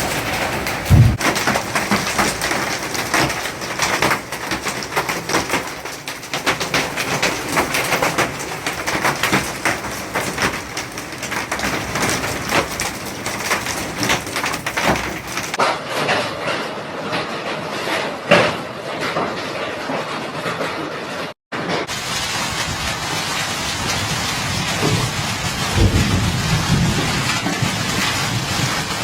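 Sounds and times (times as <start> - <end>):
hailstones pelting hard surfaces: 0.0 - 15.6, 21.6 - 29.0
heavy rain rushing: 0.0 - 16.9, 21.6 - 29.0.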